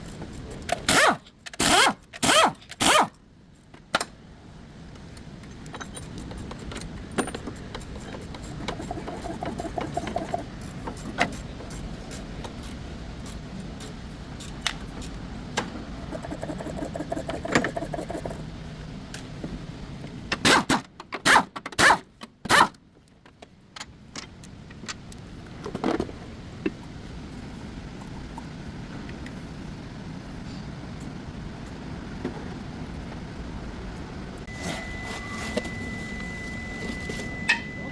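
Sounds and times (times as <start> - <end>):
low background hum: 0.0 - 37.9
metal tools clanking and scraping: 5.7 - 15.2.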